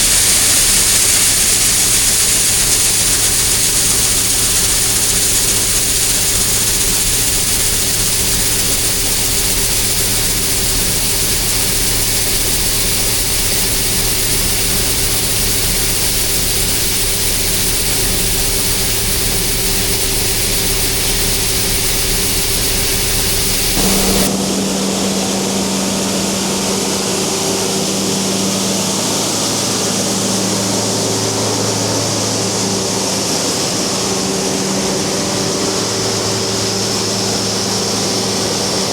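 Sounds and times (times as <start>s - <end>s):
corn pouring hiss: 0.0s - 24.3s
diesel engine running: 1.7s - 24.4s.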